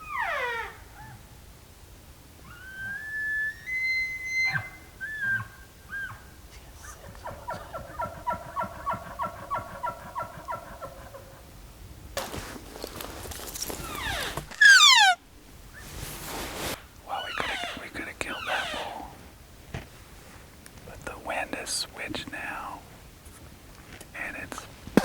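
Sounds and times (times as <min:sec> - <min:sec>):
elk bugling whistle: 0:02.4 - 0:06.3, 0:13.9 - 0:15.2
elk chuckling grunts: 0:07.2 - 0:11.3.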